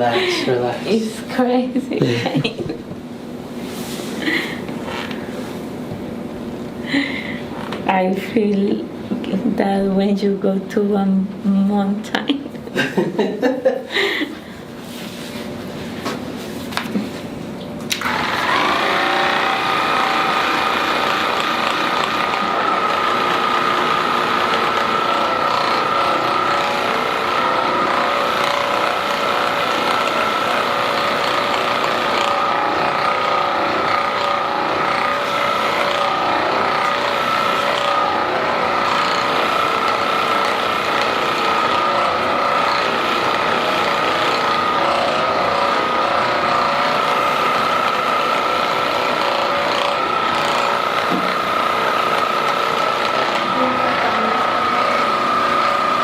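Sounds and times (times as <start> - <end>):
small electric motor whining: 4.2 - 5.4, 17.9 - 56.0.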